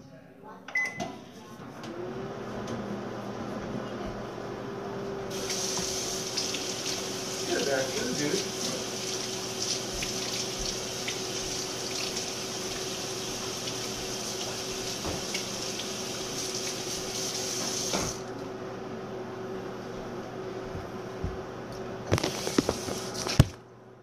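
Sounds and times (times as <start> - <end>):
tap water running into sink: 5.3 - 18.2.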